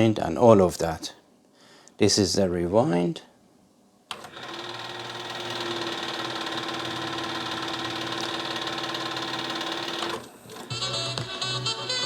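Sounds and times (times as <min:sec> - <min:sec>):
cassette deck rewinding drone: 0:04.1 - 0:12.0
fast knocking rattle: 0:04.7 - 0:10.2.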